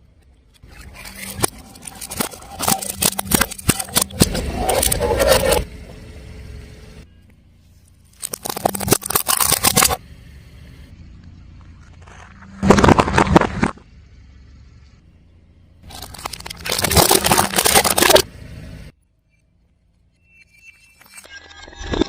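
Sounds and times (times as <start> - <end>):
brittle objects crunching under tyre: 0.6 - 5.6, 8.0 - 10.0, 11.5 - 13.8, 15.8 - 18.3.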